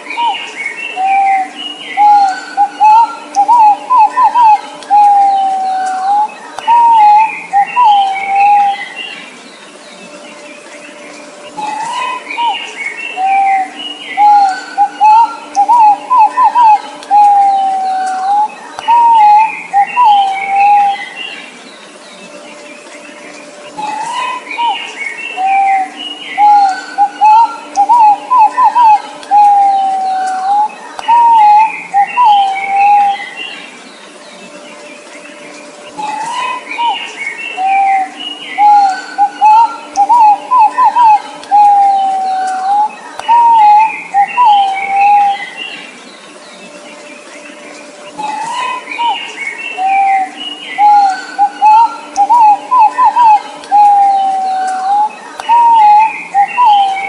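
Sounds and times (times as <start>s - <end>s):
bird whistled calls: 0.0s - 9.2s, 11.5s - 21.4s, 23.7s - 33.6s, 35.9s - 45.9s, 48.1s - 57.0s
higher bird chirps: 0.0s - 57.0s.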